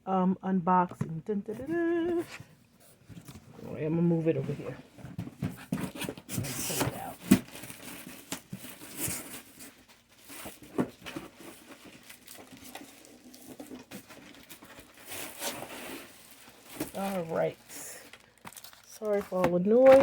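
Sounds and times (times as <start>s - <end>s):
packaging rustling and crinkling: 4.6s - 20.0s.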